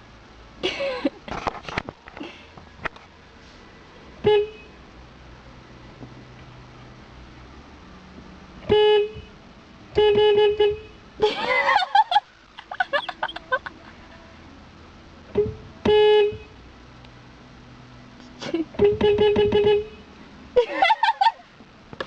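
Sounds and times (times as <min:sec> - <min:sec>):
car horn honking: 0:04.2 - 0:04.8, 0:08.6 - 0:11.1, 0:15.3 - 0:16.6, 0:18.8 - 0:20.1.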